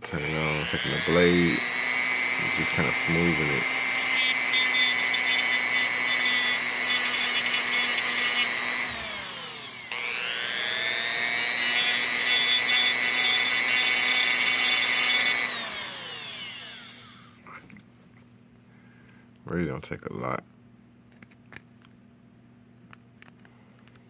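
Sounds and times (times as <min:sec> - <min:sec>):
rotary tool grinding plastic: 0:00.0 - 0:17.3.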